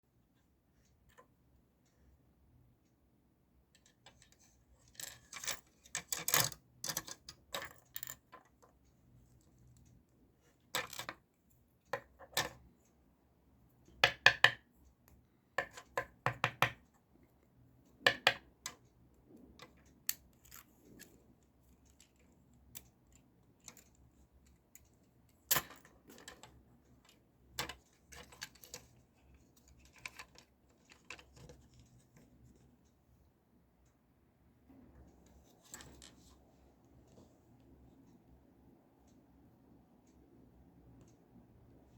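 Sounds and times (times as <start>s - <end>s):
small plastic and metal parts clicking: 3.8s - 10.0s, 10.7s - 11.2s, 19.6s - 32.6s.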